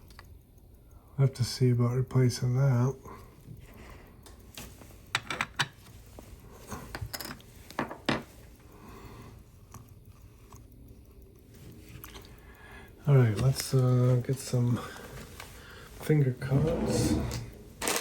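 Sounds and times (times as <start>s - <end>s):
light clicks of watchmaking tools: 0.0s - 16.6s
faint handling noise: 11.4s - 18.0s.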